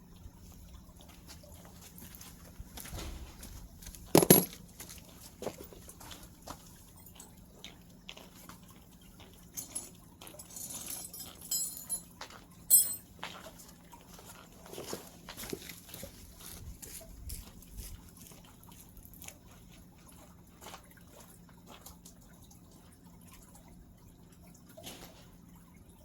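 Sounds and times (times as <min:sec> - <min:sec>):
knocks of parts being handled: 0:04.1 - 0:04.6
metallic clinks of tools: 0:04.2 - 0:04.6, 0:09.5 - 0:13.1.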